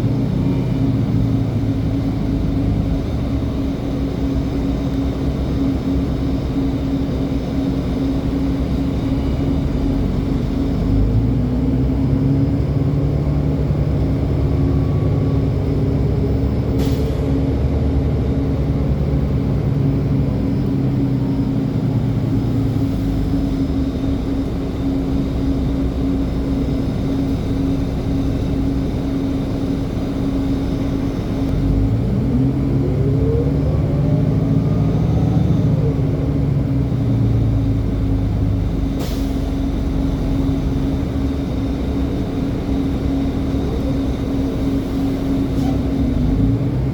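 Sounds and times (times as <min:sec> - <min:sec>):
bus engine rumble: 0:00.0 - 0:46.9
rising whine of bus: 0:00.0 - 0:46.9.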